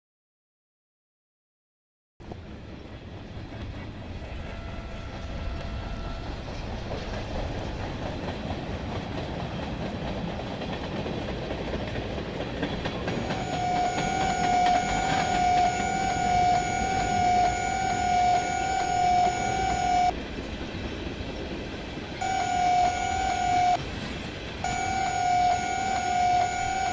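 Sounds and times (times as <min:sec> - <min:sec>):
train rumbling: 0:02.2 - 0:26.9
train horn tone: 0:04.1 - 0:07.0, 0:13.0 - 0:20.1, 0:22.2 - 0:23.8, 0:24.6 - 0:26.9.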